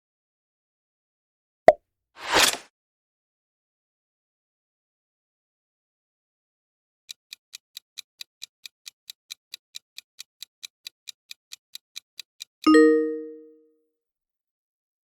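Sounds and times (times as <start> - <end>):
countdown timer ticking: 7.5 - 13.6.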